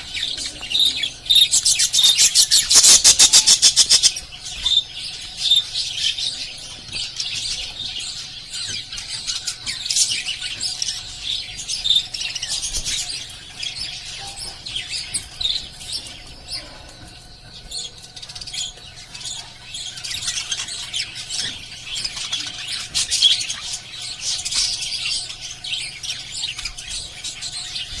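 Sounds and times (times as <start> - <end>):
parrots chirping and chattering: 0.0 - 28.0.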